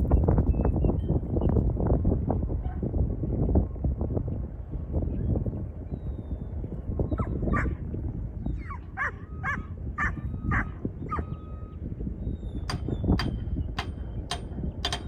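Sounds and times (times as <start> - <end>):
dog barking: 9.0 - 10.7.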